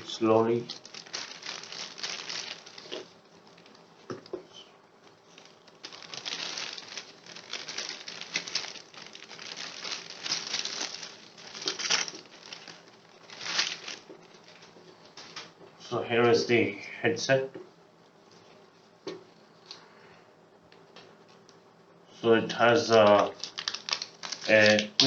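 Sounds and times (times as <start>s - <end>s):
packaging rustling and crinkling: 0.0s - 15.5s, 22.9s - 25.0s.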